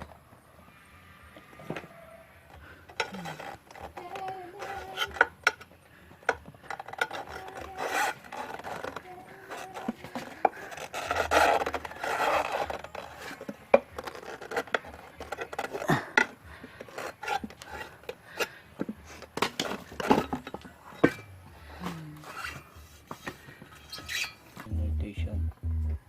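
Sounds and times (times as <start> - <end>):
rubber tire scraping on rim: 1.4 - 21.4.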